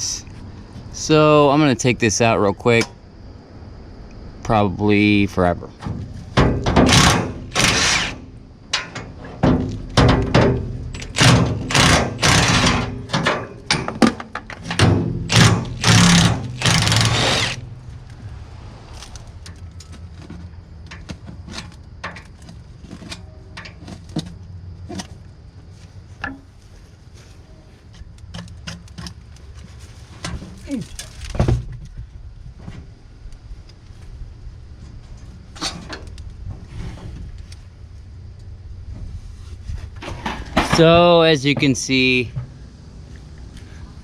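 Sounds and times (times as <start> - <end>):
rough scraping and rustling: 15.3 - 27.9, 29.2 - 31.8, 32.4 - 37.8, 38.8 - 40.9.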